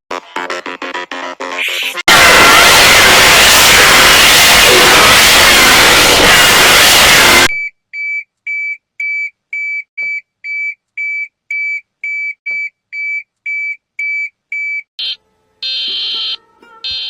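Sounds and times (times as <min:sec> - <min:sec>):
harsh alarm tone: 0:01.6 - 0:07.6, 0:15.0 - 0:17.0.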